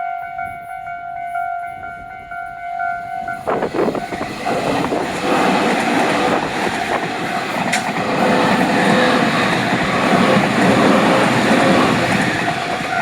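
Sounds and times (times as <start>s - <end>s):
train rumbling on rails: 0.0s - 13.0s.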